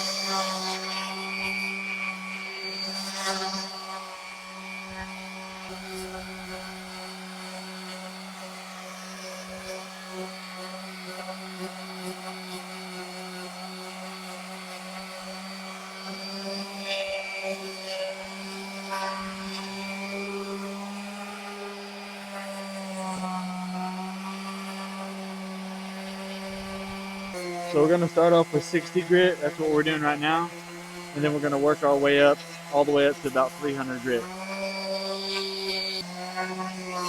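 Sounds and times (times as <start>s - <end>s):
electric sander on wood: 0.0s - 37.0s.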